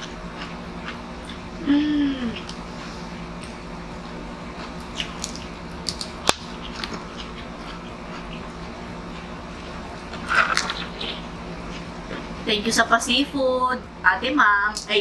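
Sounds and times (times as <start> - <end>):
steady low hum: 0.0 - 15.0
shells cracking and chewing: 4.5 - 11.9.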